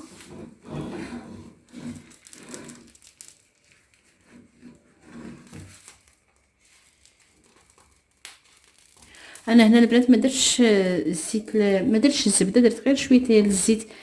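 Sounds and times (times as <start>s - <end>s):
plastic wrapping crinkling and tearing: 1.6s - 4.6s, 5.4s - 10.4s.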